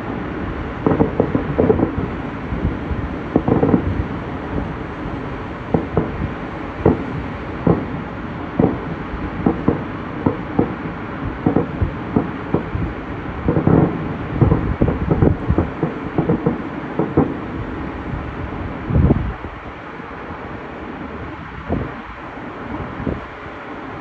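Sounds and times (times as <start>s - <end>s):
fireworks bursting: 0.6s - 18.0s
big firework boom: 0.8s - 4.8s, 5.7s - 17.4s.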